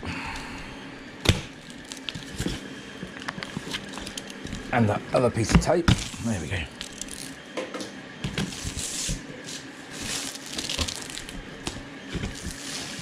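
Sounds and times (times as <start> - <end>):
packaging rustling: 1.5 - 4.8, 6.0 - 7.4, 8.3 - 13.0.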